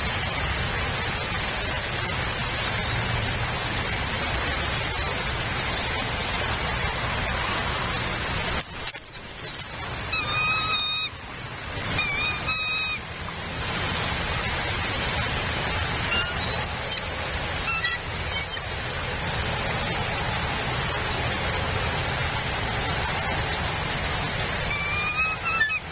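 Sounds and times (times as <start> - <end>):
steady rain falling: 0.0 - 25.9
bird calls: 9.3 - 11.2, 11.9 - 13.0, 16.0 - 18.7, 24.6 - 25.9
quick rising bird chirps: 16.1 - 17.0.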